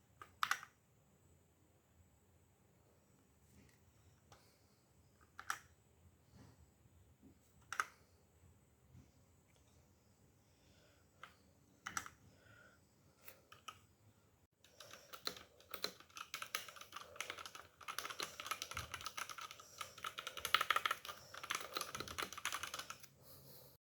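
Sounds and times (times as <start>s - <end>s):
typing on a mechanical keyboard: 14.7s - 23.1s.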